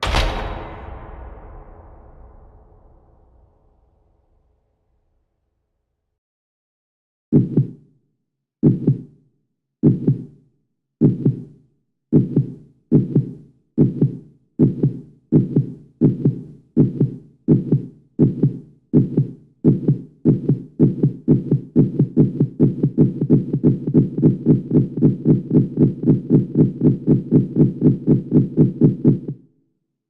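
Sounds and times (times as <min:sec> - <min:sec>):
heartbeat thuds: 0:07.3 - 0:07.8, 0:08.6 - 0:09.1, 0:09.8 - 0:10.4, 0:11.0 - 0:29.4.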